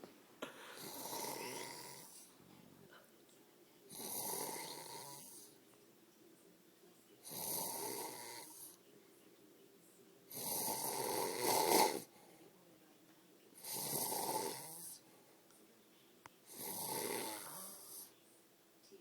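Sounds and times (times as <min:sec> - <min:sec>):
man snoring: 0:00.7 - 0:02.3, 0:03.9 - 0:05.4, 0:07.3 - 0:08.6, 0:10.3 - 0:12.1, 0:13.6 - 0:15.0, 0:16.5 - 0:18.0.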